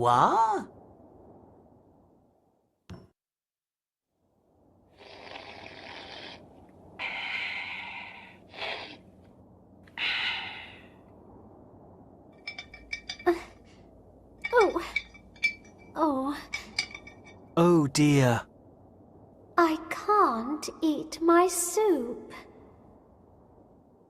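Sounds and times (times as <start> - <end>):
light clinks on a dish: 12.4 - 13.5, 14.4 - 15.9, 16.5 - 17.5.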